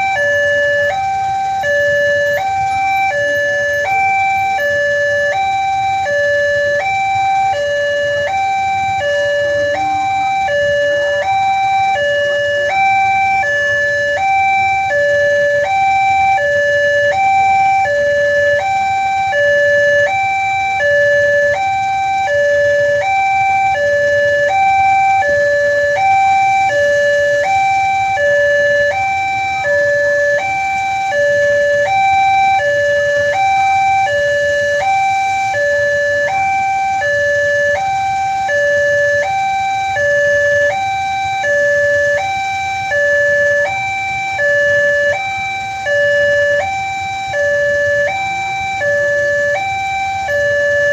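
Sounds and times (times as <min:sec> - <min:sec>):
level crossing two-tone alarm: 0:00.0 - 0:50.9.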